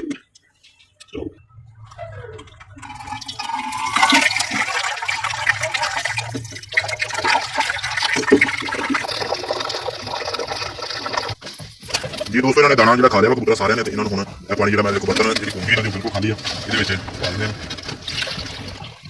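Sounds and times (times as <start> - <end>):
tap water running into jug: 2.8 - 12.4.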